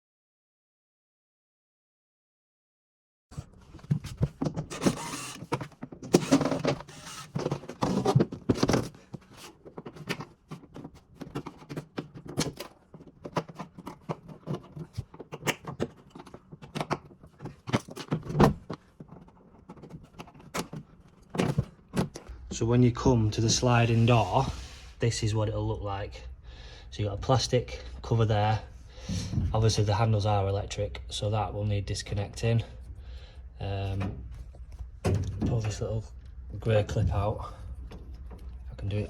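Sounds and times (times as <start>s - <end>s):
handling clicks knocks and rustles: 3.4s - 22.4s, 33.9s - 37.0s, 37.6s - 39.0s.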